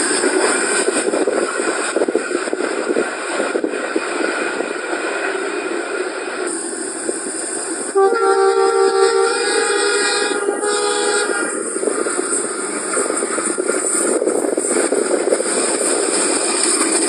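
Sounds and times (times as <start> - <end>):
train rumbling on rails: 0.0 - 17.0
locomotive horn: 8.0 - 11.6.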